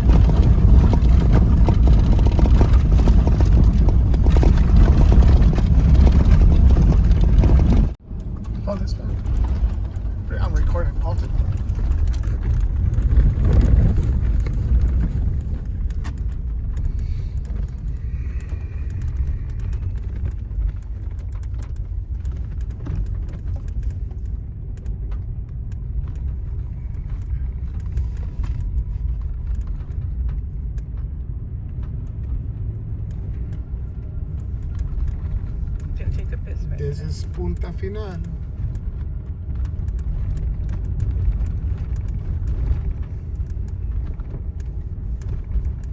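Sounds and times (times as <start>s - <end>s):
small ticks and rattles: 0.0s - 45.9s
vehicle engine and road noise: 0.0s - 45.9s.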